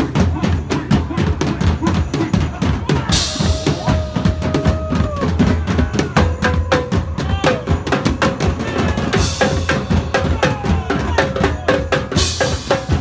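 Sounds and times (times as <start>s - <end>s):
drum-driven music: 0.0s - 13.0s
cymbal crash: 3.1s - 10.7s.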